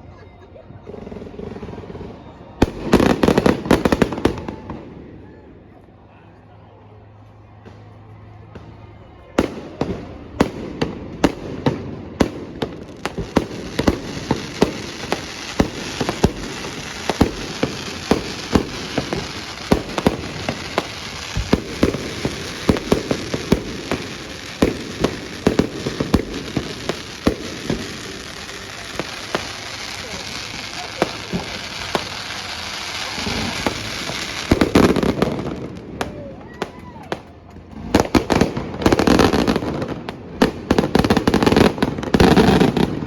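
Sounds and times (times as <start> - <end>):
fireworks bangs: 0.9 - 5.2, 7.7 - 43.0
fireworks crackling hiss: 9.5 - 36.9, 37.6 - 43.0.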